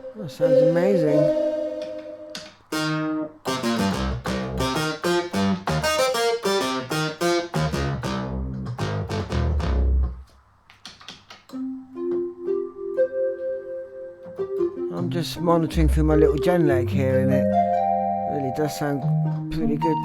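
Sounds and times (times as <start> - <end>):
held synth tones: 0.0 - 6.2
synthesizer plucked notes: 0.0 - 10.2, 11.6 - 20.0
deep bass notes: 3.5 - 6.0, 7.5 - 10.2, 15.0 - 20.0.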